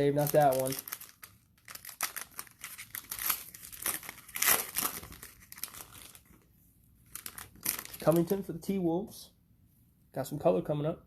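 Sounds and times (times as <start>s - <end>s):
cellophane wrapper crinkling: 0.0s - 6.4s, 7.0s - 8.4s.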